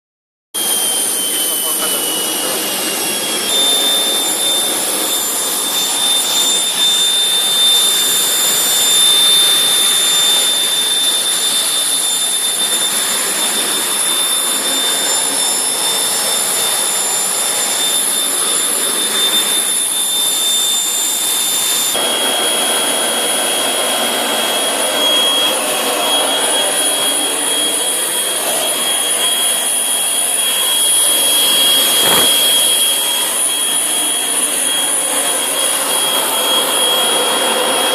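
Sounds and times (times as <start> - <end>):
industrial vacuum whining: 0.6 - 37.9
rushing air: 31.5 - 32.8.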